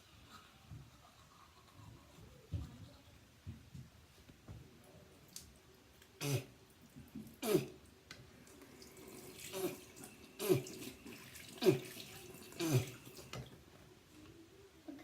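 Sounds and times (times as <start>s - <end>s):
person rinsing mouth and spitting: 6.1s - 6.6s, 7.2s - 7.9s, 8.6s - 13.5s.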